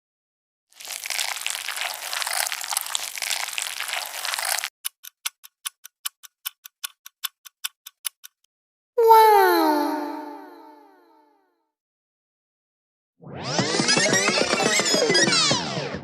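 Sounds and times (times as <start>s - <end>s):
evenly spaced ticks: 4.8s - 8.5s.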